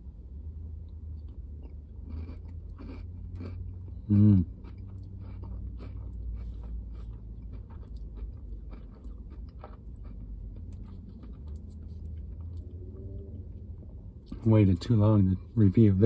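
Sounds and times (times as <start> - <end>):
steady low hum: 0.0 - 16.0
close-up chewing and crunching: 0.9 - 13.3.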